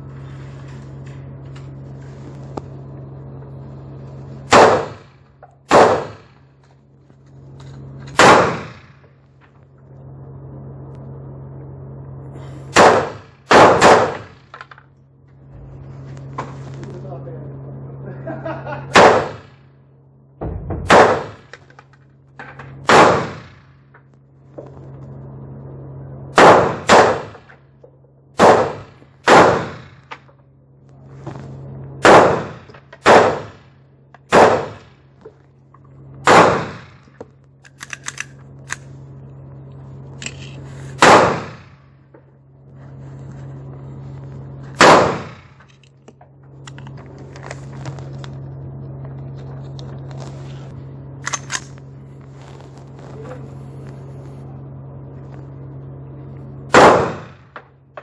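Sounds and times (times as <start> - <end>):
steady low hum: 0.0 - 58.0
pistol shots: 4.5 - 5.1, 5.7 - 6.4, 8.2 - 8.9, 12.7 - 14.4, 18.9 - 19.5, 20.5 - 21.6, 22.8 - 23.6, 26.4 - 27.4, 28.4 - 30.1, 32.0 - 33.6, 34.3 - 34.9, 36.2 - 37.0, 41.0 - 41.8, 44.8 - 45.6, 56.7 - 57.5.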